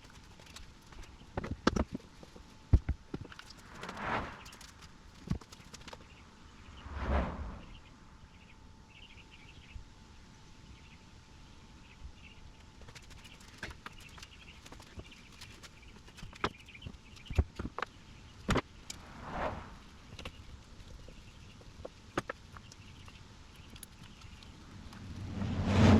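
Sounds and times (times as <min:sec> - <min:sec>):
birds chirping faintly: 0:00.0 - 0:25.5
rushes of noise: 0:03.5 - 0:04.8, 0:06.6 - 0:07.9, 0:18.9 - 0:20.0, 0:24.7 - 0:25.9.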